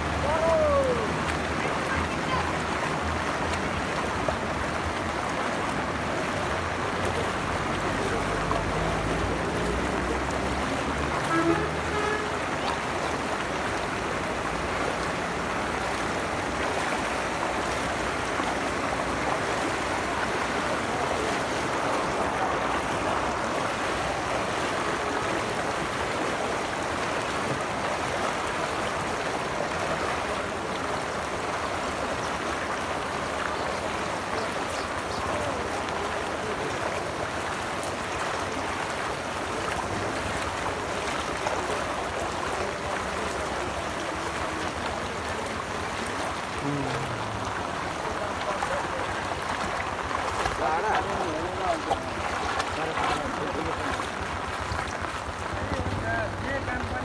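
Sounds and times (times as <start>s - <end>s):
floodwater rushing: 0.0s - 57.0s.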